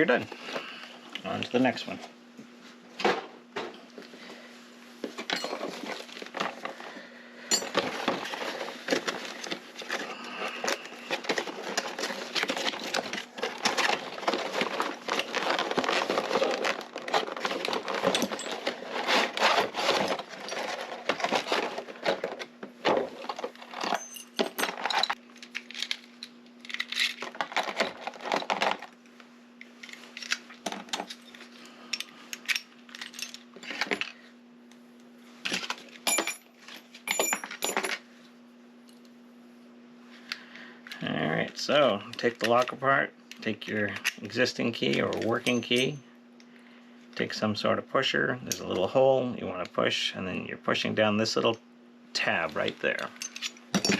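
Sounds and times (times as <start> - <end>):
faint steady hum: 0.0 - 53.9
plastic packaging crinkling: 7.8 - 22.5.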